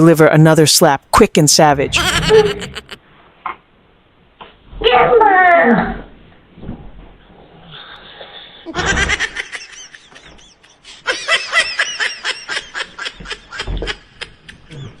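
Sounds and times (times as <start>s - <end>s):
person giggling: 1.9s - 3.0s, 8.7s - 15.0s.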